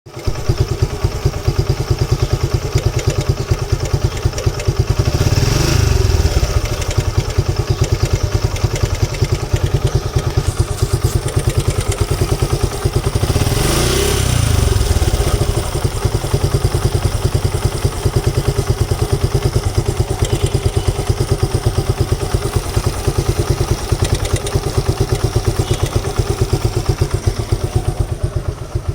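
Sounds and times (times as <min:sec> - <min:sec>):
motorcycle engine idling: 0:00.1 - 0:28.9
throttle blips raising revs: 0:04.9 - 0:09.7, 0:10.4 - 0:15.8.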